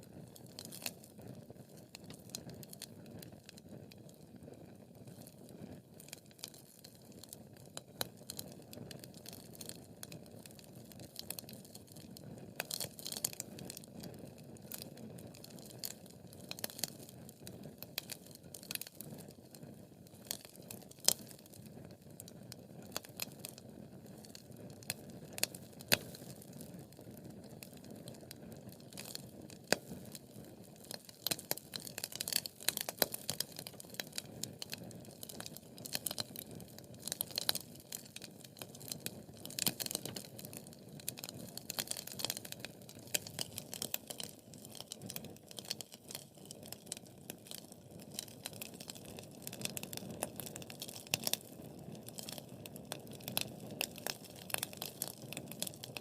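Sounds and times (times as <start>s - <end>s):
sharp snaps and pops: 0.0s - 56.0s
wood fire crackling: 0.0s - 56.0s.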